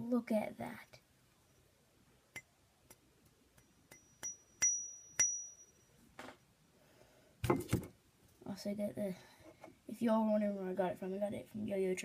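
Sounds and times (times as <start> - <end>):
high ringing ping: 3.6 - 6.0
thump: 7.4 - 7.9.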